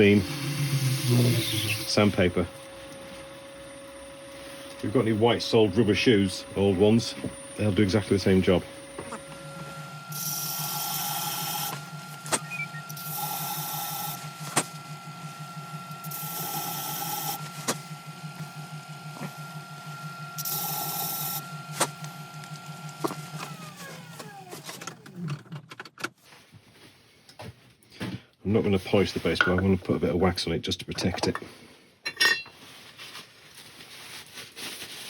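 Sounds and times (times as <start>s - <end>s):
lathe motor whine: 0.0s - 25.4s.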